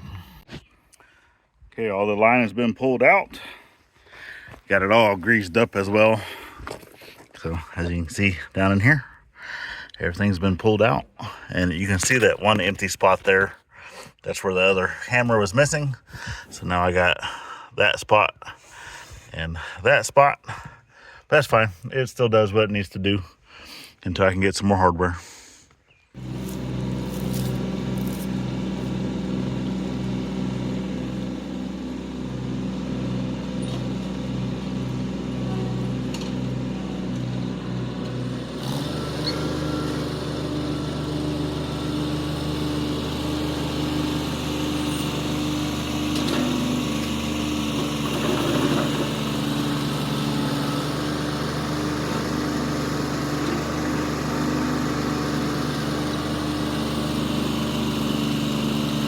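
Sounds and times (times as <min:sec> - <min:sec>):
flail mower hum: 0:26.2 - 0:59.0
tractor engine running: 0:26.2 - 0:59.0.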